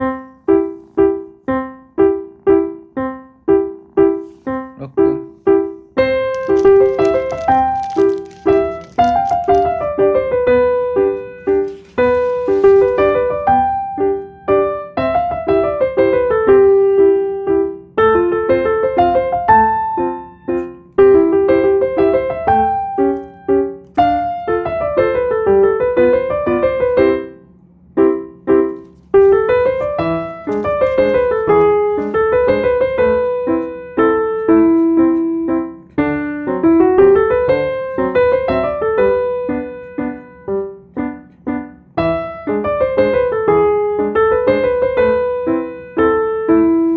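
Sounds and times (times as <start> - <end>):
bouncy keyboard music: 28.1 - 46.9.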